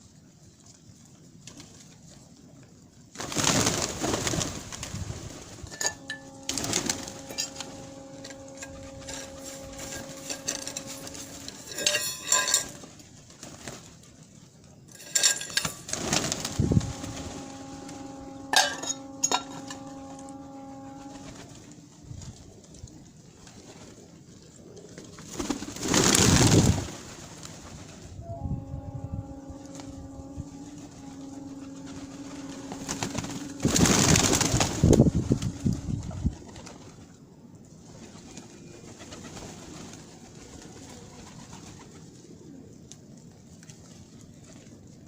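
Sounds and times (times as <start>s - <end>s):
low hum with overtones: 3.8s - 13.4s, 14.5s - 24.6s, 27.7s - 42.9s.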